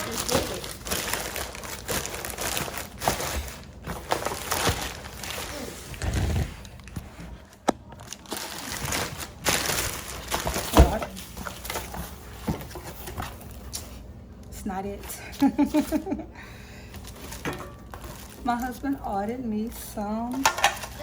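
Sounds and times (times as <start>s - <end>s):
cardboard packaging rustling: 0.0s - 14.1s, 17.0s - 18.9s.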